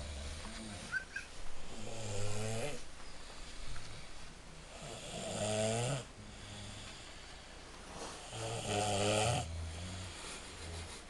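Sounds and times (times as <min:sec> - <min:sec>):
person snoring: 0:01.7 - 0:02.8, 0:04.7 - 0:07.2, 0:08.2 - 0:11.0
low breathing: 0:09.4 - 0:11.0.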